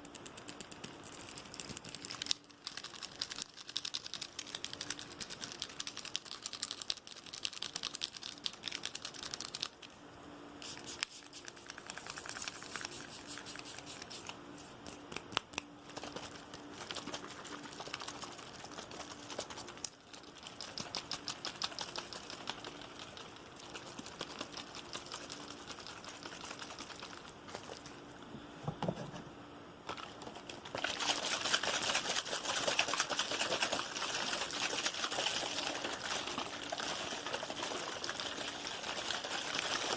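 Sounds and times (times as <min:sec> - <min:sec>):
liquid pouring or splashing: 0:30.0 - 0:39.9.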